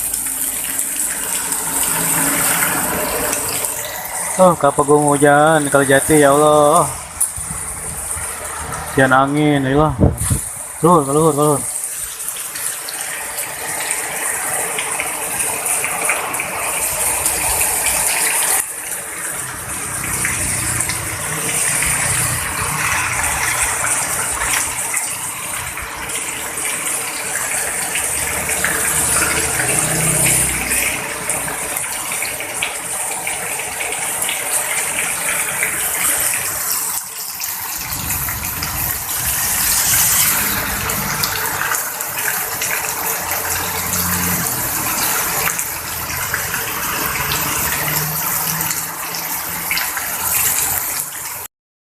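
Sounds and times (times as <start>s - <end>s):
heavy rain pouring: 0.0s - 51.5s
wind gusts rumbling: 6.9s - 9.0s, 9.8s - 10.8s, 37.4s - 42.8s.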